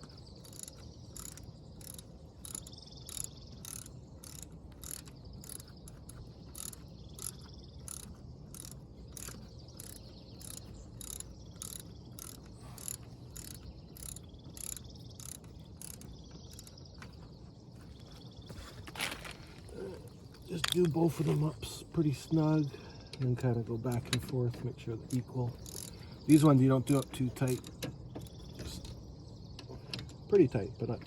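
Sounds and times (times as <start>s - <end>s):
socket ratchet wrench clicking: 0.4s - 16.8s, 25.6s - 26.0s.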